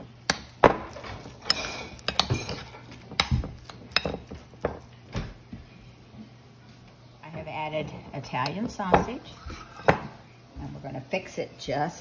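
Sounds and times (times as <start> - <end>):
metal utensil clinking on dish: 1.4 - 2.8.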